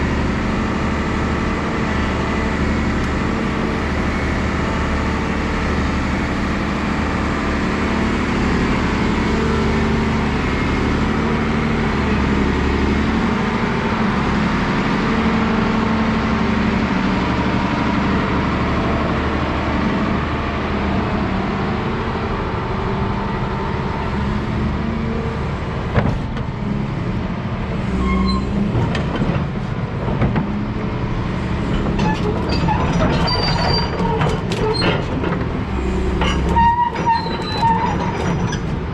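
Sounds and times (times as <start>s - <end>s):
excavator diesel engine running: 0.0s - 38.9s
metal clanks and squeaks: 27.9s - 29.5s, 31.6s - 38.9s.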